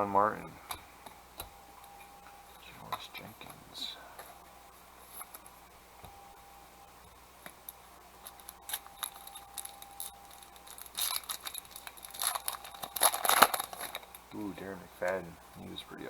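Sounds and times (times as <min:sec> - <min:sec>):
wrapper crinkling: 0:07.5 - 0:16.0.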